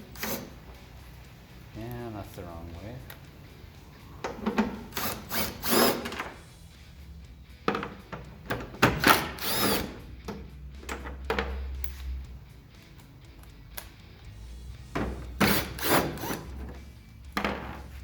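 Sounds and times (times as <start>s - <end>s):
cordless drill driver whirring: 4.9s - 6.2s, 9.0s - 10.0s, 15.4s - 16.6s.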